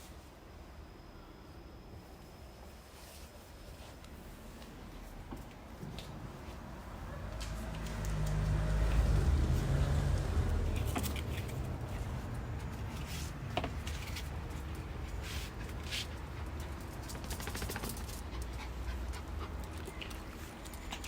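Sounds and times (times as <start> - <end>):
dog panting: 14.7 - 21.0.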